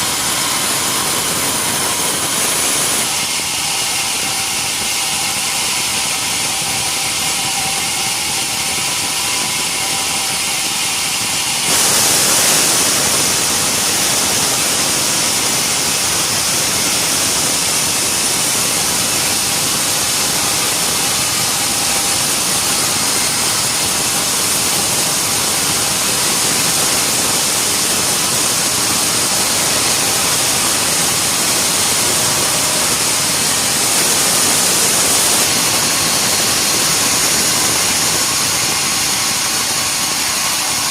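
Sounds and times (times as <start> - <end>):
machine noise: 0.0 - 40.9
saw blade cutting through log: 0.0 - 40.9.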